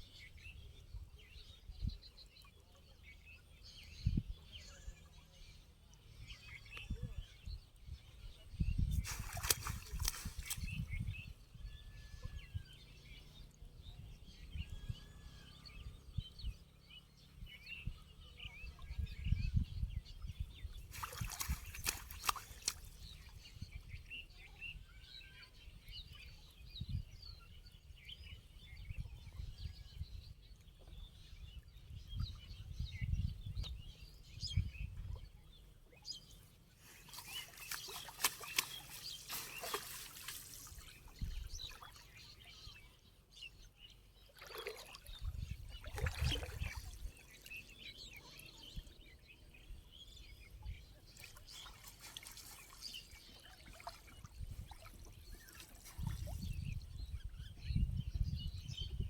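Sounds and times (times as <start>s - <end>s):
birds chirping: 2.9s - 59.0s
water splashing: 9.0s - 10.8s, 20.9s - 23.2s, 36.8s - 42.2s, 44.3s - 47.6s.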